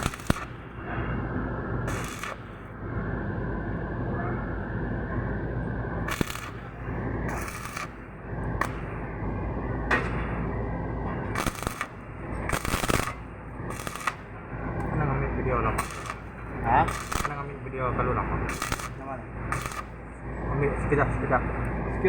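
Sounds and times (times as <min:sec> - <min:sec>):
welding arc crackling: 0:00.0 - 0:00.8, 0:01.9 - 0:02.8, 0:06.0 - 0:09.2, 0:11.3 - 0:20.2
low machine hum: 0:00.0 - 0:22.0.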